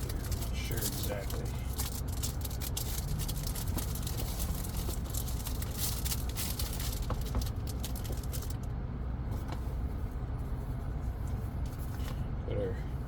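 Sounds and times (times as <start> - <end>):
cardboard crinkling and rustling: 0.0 - 8.6.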